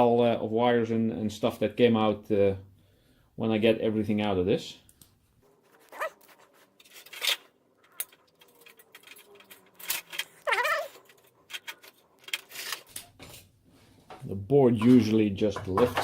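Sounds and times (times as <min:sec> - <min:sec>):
parts clicking and rattling: 0:05.8 - 0:14.2, 0:14.8 - 0:16.0.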